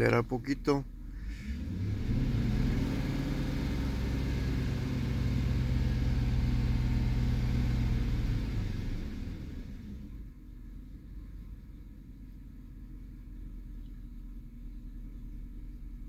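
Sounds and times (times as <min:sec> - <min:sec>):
misfiring engine revving: 0:01.1 - 0:10.1.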